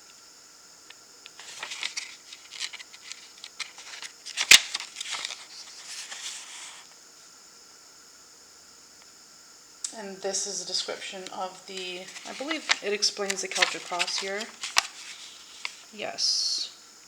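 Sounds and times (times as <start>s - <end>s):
paper pages rustling: 1.3s - 6.9s, 10.7s - 16.0s
booklet click: 12.1s - 15.1s.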